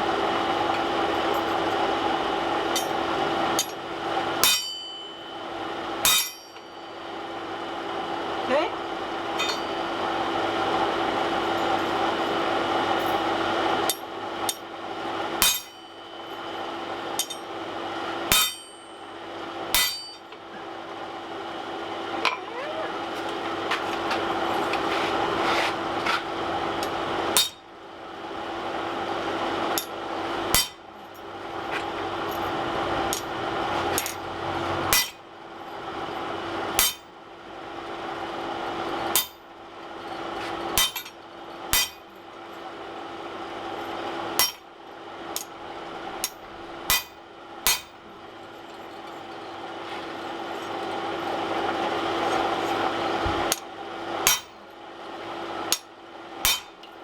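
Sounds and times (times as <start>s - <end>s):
steady workshop hum: 0.0s - 57.0s
hammer ringing on steel anvil: 4.4s - 5.4s, 6.0s - 6.8s, 15.4s - 16.2s, 17.2s - 17.5s, 18.3s - 19.1s, 19.8s - 20.3s, 34.9s - 35.2s, 41.8s - 42.0s, 44.4s - 44.6s, 46.2s - 48.0s, 54.2s - 54.6s, 56.5s - 56.8s.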